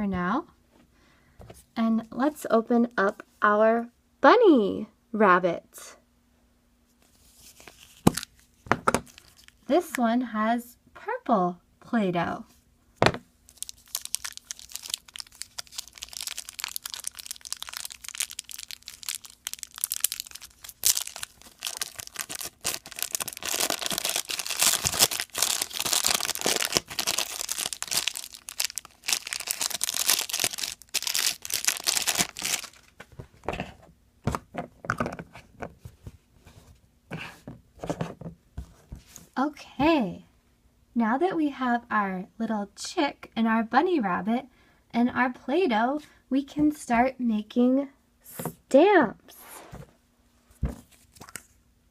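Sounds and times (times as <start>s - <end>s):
packaging crinkling and tearing: 7.6s - 8.4s, 9.0s - 9.6s, 13.5s - 33.0s, 50.8s - 51.6s.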